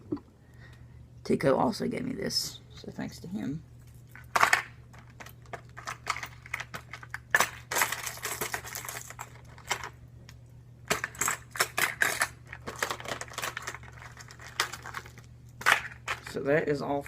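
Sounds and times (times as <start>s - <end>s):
plastic lures clicking and clattering: 4.0s - 10.0s, 10.9s - 16.4s.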